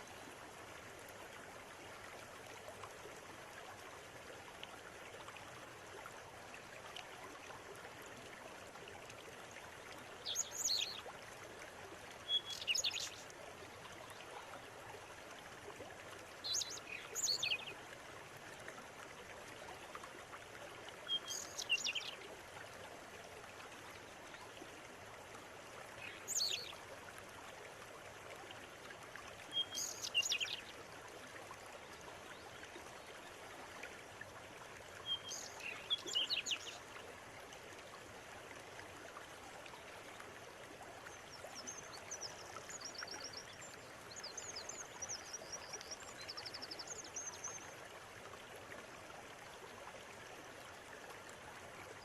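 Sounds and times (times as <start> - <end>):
flowing river: 0.0 - 52.0
songbird singing: 10.2 - 11.0, 12.2 - 13.2, 16.4 - 17.7, 21.1 - 22.2, 26.0 - 26.7, 29.5 - 30.7, 35.1 - 36.8.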